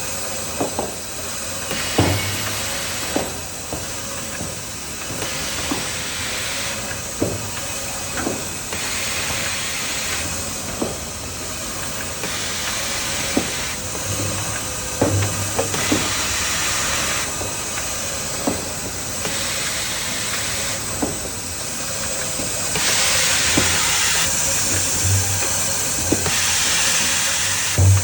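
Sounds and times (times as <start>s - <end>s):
band saw machine hissing: 0.0s - 28.0s
sharp knocks: 13.4s - 17.6s, 22.8s - 26.8s, 27.8s - 28.0s.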